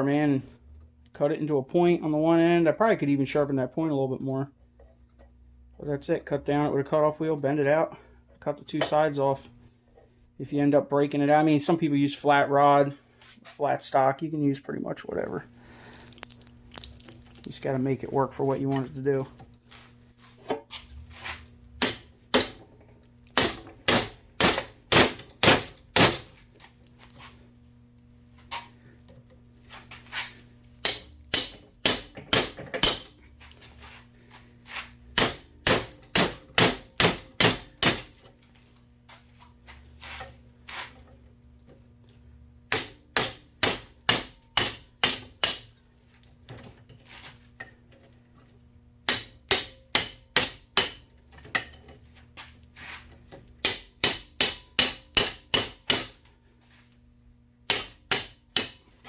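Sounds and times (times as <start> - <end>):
hammer striking steel punch: 21.8 - 22.6, 23.3 - 26.3, 30.8 - 33.1, 35.2 - 38.2, 42.7 - 45.7, 49.0 - 51.1, 53.6 - 56.2, 57.7 - 58.8.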